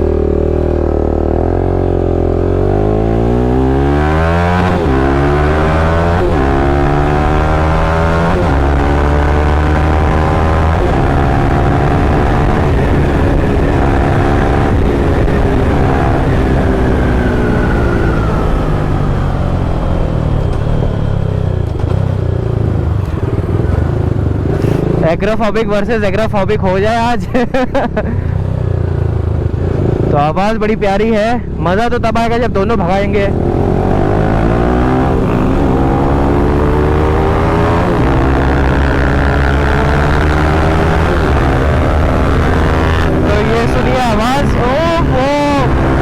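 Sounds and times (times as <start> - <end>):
motorcycle engines running: 0.0 - 46.0
motorcycle engine exhaust note: 32.9 - 46.0.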